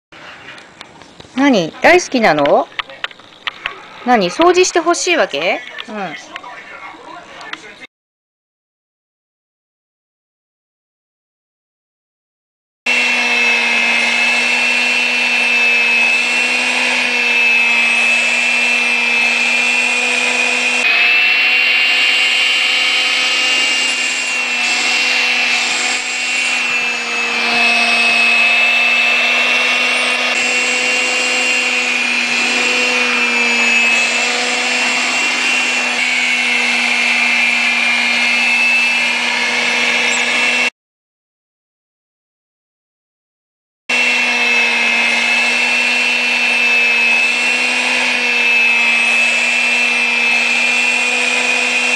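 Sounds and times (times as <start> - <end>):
vacuum cleaner running: 12.9 - 40.7, 43.9 - 51.9.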